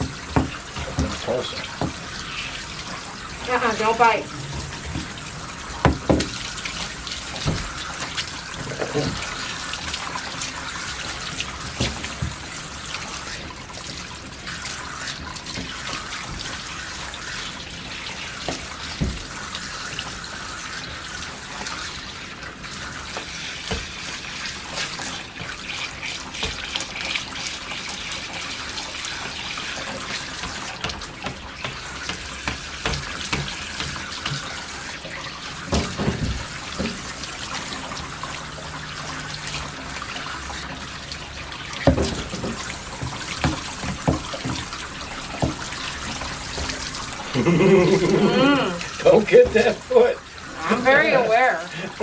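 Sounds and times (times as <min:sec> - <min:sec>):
small knocks and splashes: 0:00.0 - 0:47.4
shower spray hissing: 0:00.8 - 0:13.5, 0:41.8 - 0:52.0.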